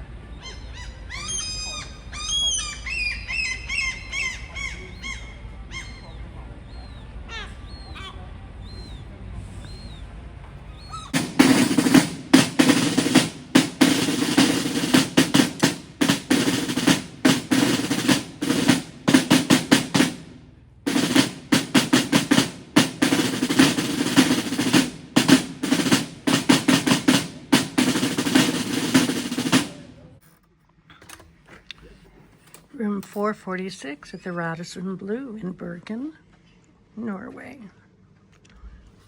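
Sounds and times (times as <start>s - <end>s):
snare drum rolls: 11.1s - 30.2s.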